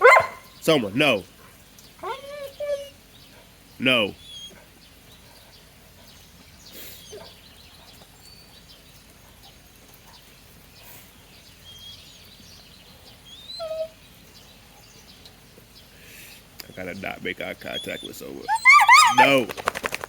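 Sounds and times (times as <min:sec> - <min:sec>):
dog whining: 0:00.0 - 0:00.5, 0:02.0 - 0:03.0, 0:04.2 - 0:04.6, 0:07.0 - 0:07.4, 0:13.3 - 0:14.0, 0:17.7 - 0:19.5
bird chirps: 0:01.7 - 0:16.0, 0:16.6 - 0:19.5.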